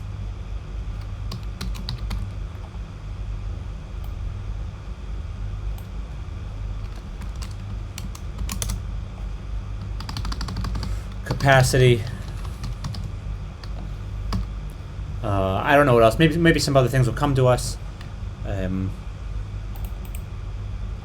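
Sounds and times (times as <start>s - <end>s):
steady low hum: 0.0s - 21.0s
computer keyboard typing: 1.0s - 2.8s, 6.8s - 8.8s, 9.8s - 14.5s.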